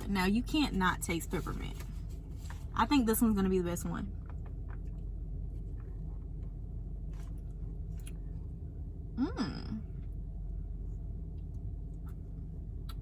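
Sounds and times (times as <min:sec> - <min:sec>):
low steady rumble: 0:00.0 - 0:13.0
person humming mmm: 0:09.2 - 0:09.9.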